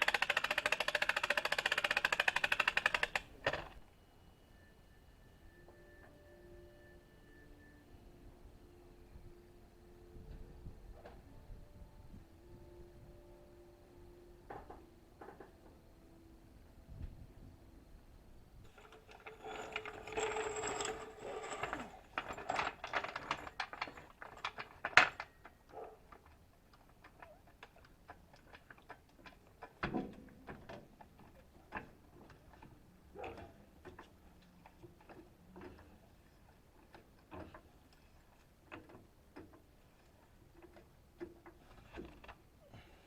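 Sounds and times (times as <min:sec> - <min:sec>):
mechanical rattling: 0:00.0 - 0:03.8, 0:18.7 - 0:25.6.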